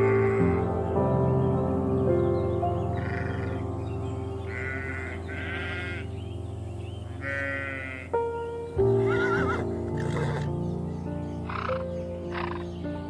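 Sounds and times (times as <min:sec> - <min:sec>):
background music: 0:00.0 - 0:13.0
animal calls: 0:03.0 - 0:03.6, 0:04.5 - 0:06.1, 0:07.0 - 0:08.1, 0:09.0 - 0:10.5, 0:11.4 - 0:12.8.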